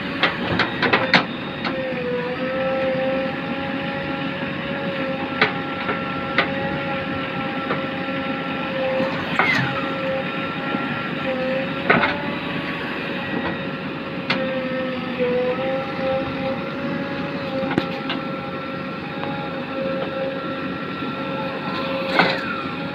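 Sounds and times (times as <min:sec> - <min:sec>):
diesel engine and hydraulics whining: 0:00.0 - 0:22.9
short falling squeal: 0:08.7 - 0:11.6.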